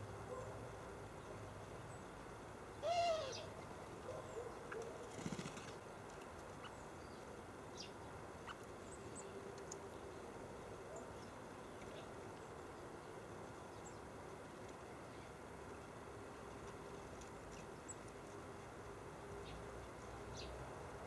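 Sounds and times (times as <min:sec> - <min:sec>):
wings fluttering: 0:04.9 - 0:05.8.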